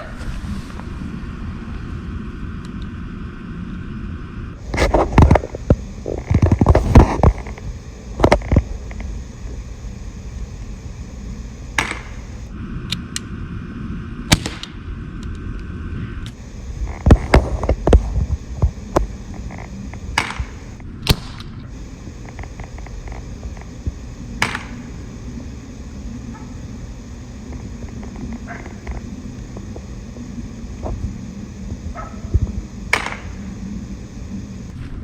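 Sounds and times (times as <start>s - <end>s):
bb pistol shots cracking: 24.4s - 25.1s.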